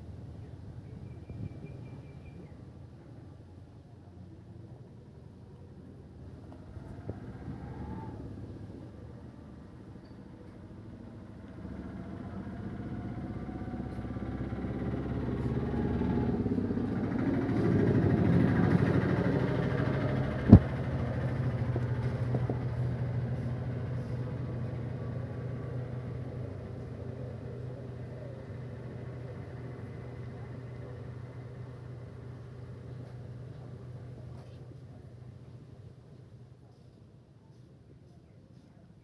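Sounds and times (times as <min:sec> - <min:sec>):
vehicle engine running: 0:05.6 - 0:36.3.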